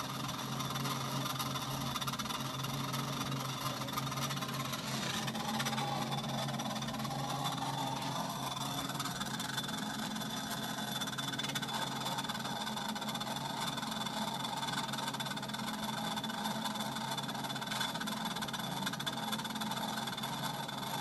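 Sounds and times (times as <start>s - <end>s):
treadmill motor whirring: 0.0s - 13.8s.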